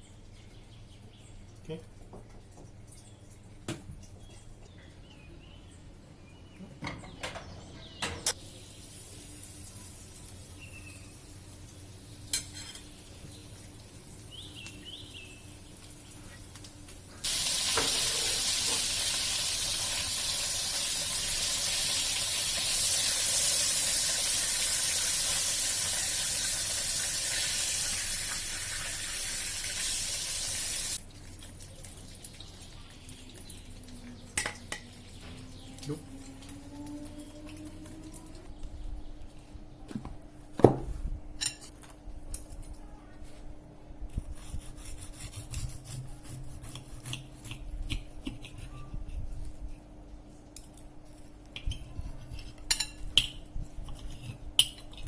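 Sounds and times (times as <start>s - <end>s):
chicken sizzling in hot oil: 8.3s - 14.4s, 15.5s - 33.8s.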